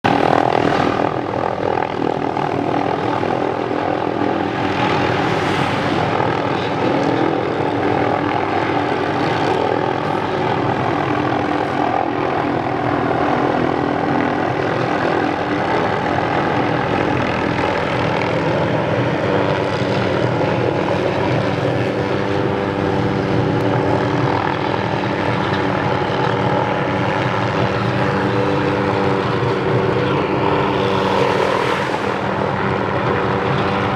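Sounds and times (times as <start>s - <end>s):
helicopter engine and rotor: 0.0s - 33.9s
suspended saw running: 0.0s - 33.9s.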